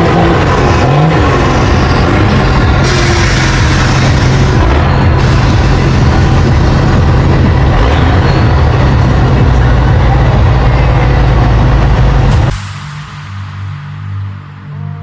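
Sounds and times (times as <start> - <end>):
diesel truck engine running: 0.0 - 12.6
background music: 0.0 - 15.0.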